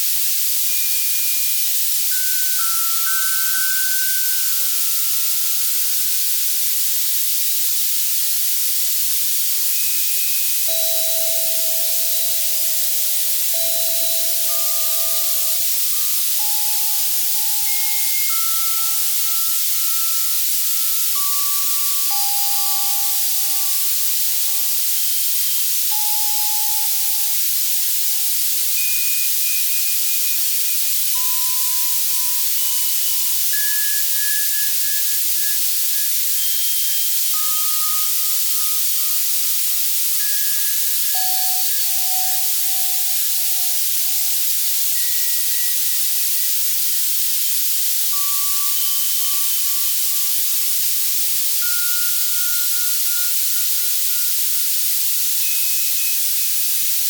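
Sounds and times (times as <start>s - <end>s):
synthesized white noise hiss: 0.0s - 57.0s
soft bell-like notes: 9.7s - 46.8s.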